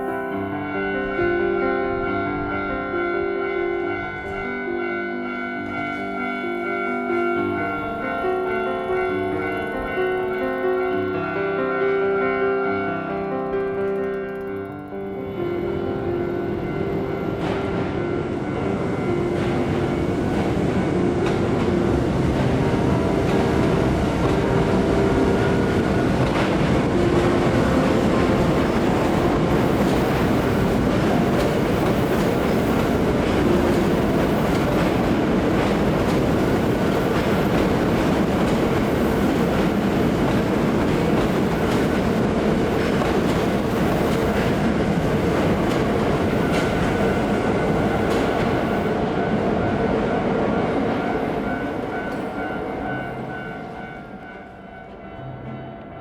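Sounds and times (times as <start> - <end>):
train rumbling past: 15.1 - 55.9
wheels clacking over rail joints: 19.2 - 49.6.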